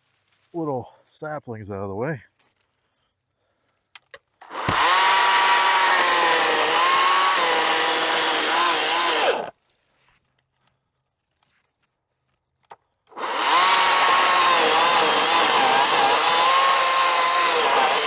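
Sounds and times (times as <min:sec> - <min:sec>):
chainsaw cutting wood: 0:04.4 - 0:09.5, 0:13.1 - 0:18.0.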